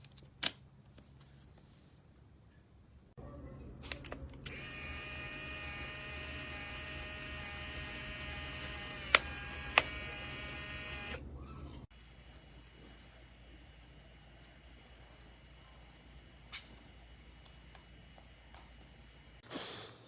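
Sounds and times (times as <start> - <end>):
small electric motor running: 4.5 - 11.2.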